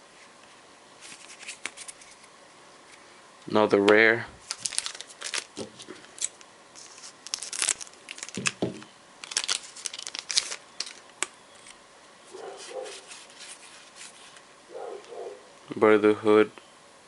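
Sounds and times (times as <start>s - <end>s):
foil wrapper crinkling: 4.4s - 11.8s.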